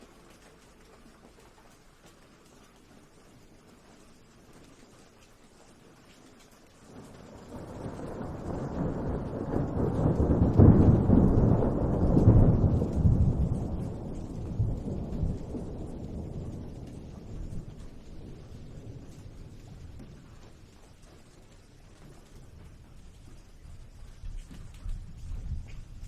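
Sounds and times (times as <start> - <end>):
thunder rumbling: 6.8 - 26.0.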